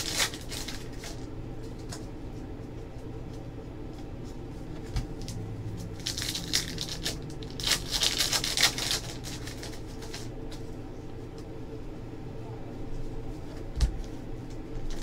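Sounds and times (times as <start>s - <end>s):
wrapper tearing and crinkling: 0.0s - 1.2s, 5.9s - 10.3s.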